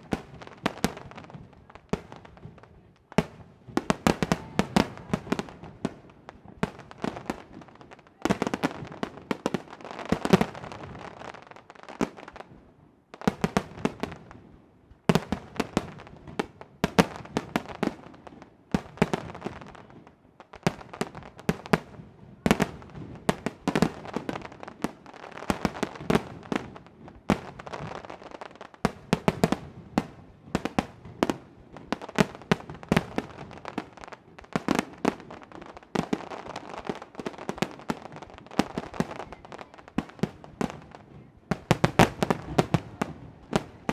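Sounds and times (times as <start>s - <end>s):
fireworks bangs: 0.0s - 12.7s, 15.1s - 43.9s
fireworks crackling: 0.0s - 43.9s.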